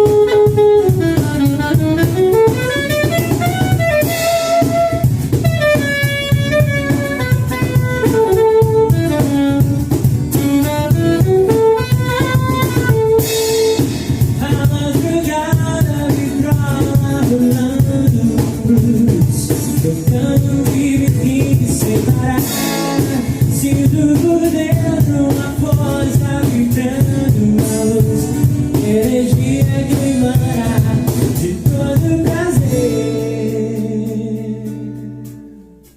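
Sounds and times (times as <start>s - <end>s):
lead instrument melody: 0.0s - 14.1s
bass: 0.0s - 35.9s
drums: 0.0s - 35.9s
small band playing: 0.0s - 35.9s
person singing: 14.4s - 35.4s.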